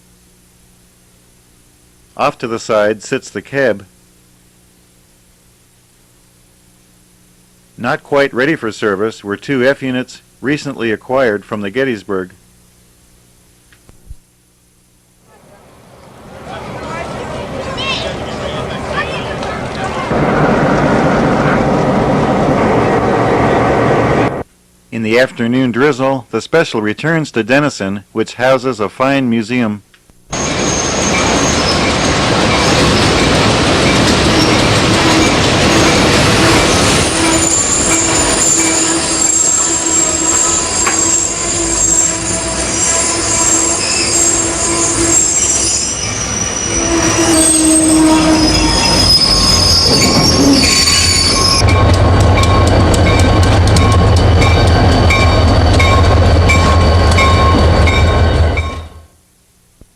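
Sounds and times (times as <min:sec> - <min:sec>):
train rumble: 0:15.6 - 0:24.4, 0:30.4 - 0:59.0
wheels clicking on rails: 0:17.0 - 0:20.1, 0:30.6 - 0:42.7, 0:49.2 - 0:58.8
train wheels squealing and ringing: 0:30.4 - 0:59.0.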